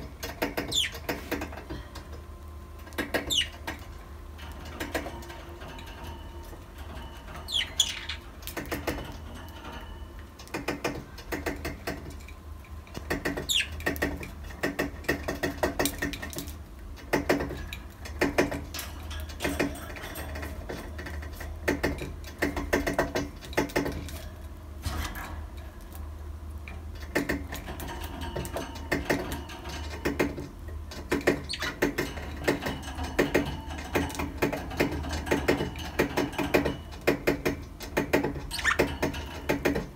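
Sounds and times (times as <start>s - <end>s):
budgerigars clicking and tapping: 0.0s - 1.7s, 2.8s - 3.9s, 7.3s - 9.2s, 10.4s - 12.2s, 12.9s - 18.7s, 27.0s - 39.9s.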